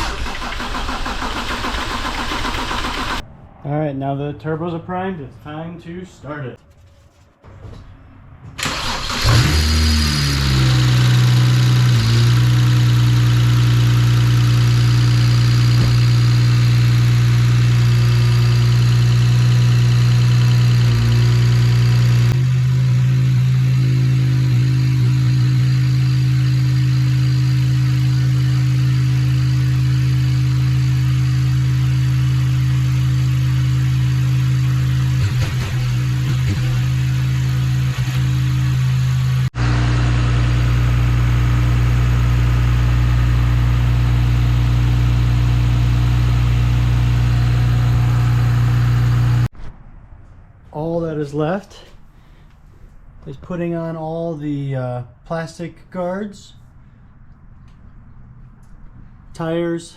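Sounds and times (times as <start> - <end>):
car engine starting and idling: 0.0 - 3.3, 8.6 - 49.5.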